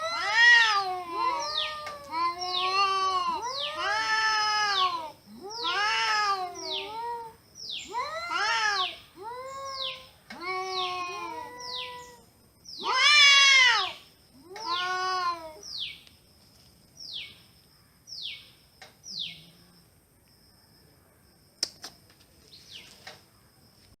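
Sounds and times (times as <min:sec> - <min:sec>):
cats meowing: 0:00.0 - 0:12.2, 0:12.8 - 0:15.7
sharp clicks: 0:21.6 - 0:22.0.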